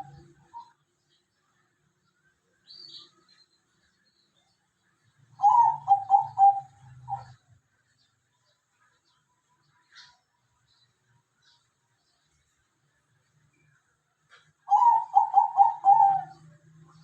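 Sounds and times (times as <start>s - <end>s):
dove cooing: 0.0s - 0.8s, 5.4s - 7.4s, 14.7s - 17.0s.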